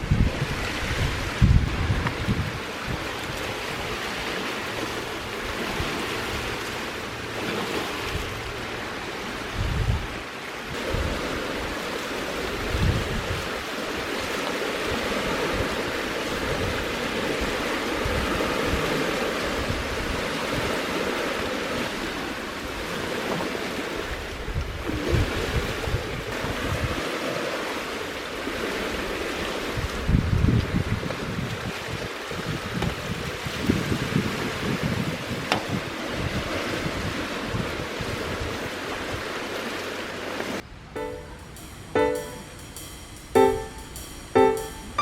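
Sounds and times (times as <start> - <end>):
wind buffeting microphone: 0.0 - 3.2.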